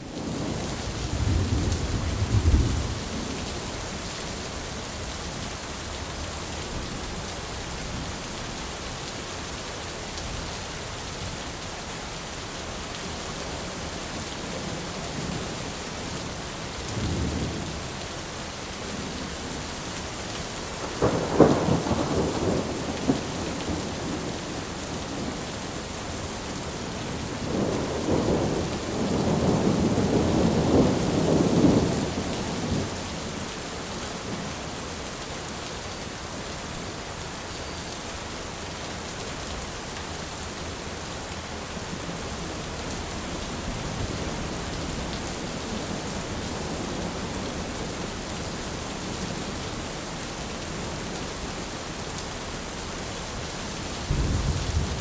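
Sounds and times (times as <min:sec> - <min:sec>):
steady rain: 0:00.0 - 0:55.0
rolling thunder: 0:00.2 - 0:03.4, 0:21.0 - 0:24.5, 0:27.1 - 0:32.9, 0:54.0 - 0:55.0.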